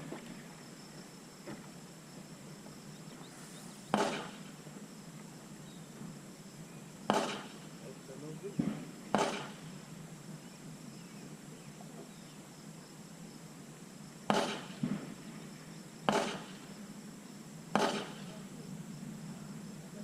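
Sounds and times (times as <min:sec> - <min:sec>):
gunshots: 0:03.9 - 0:04.5, 0:07.1 - 0:07.7, 0:08.6 - 0:09.7, 0:14.3 - 0:15.1, 0:16.1 - 0:16.6, 0:17.7 - 0:18.4.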